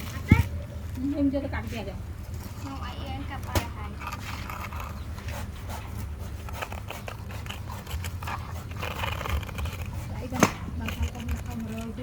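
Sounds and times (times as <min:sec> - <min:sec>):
toy vehicles scraping in sand: 0:06.3 - 0:12.0.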